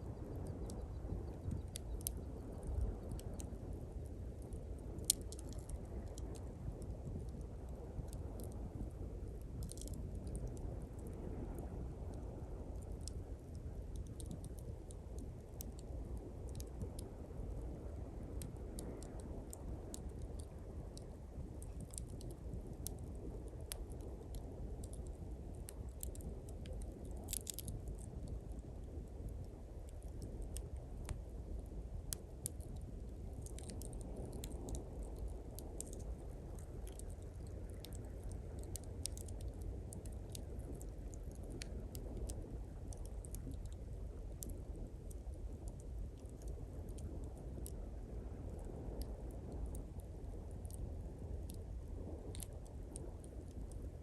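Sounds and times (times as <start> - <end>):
campfire crackling and popping: 0.1 - 54.0.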